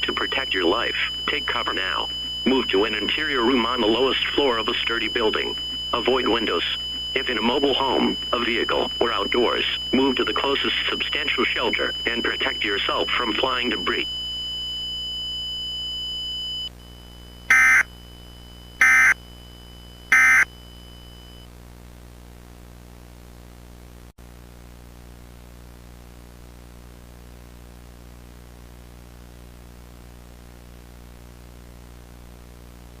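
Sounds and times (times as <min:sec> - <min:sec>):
digital data bursts: 0:00.0 - 0:14.2, 0:17.5 - 0:17.9, 0:18.8 - 0:19.2, 0:20.1 - 0:20.5
low hum and hiss: 0:00.0 - 0:26.6.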